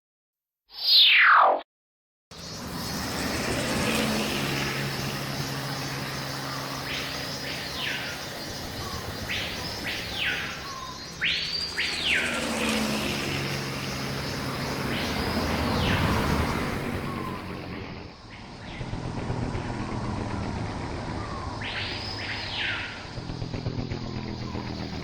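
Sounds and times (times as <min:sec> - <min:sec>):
low engine hum: 0:02.3 - 0:25.0
bird whistling call: 0:08.8 - 0:12.4.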